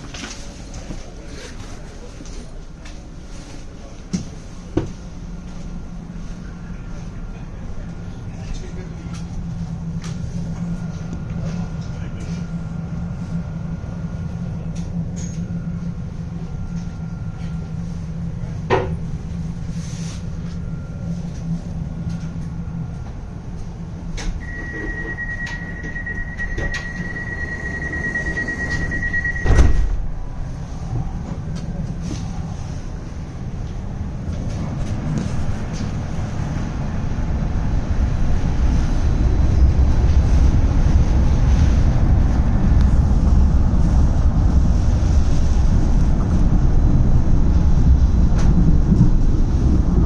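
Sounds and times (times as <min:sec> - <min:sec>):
door warning beeps: 0:24.4 - 0:30.0
sliding doors shutting thud: 0:28.6 - 0:30.1.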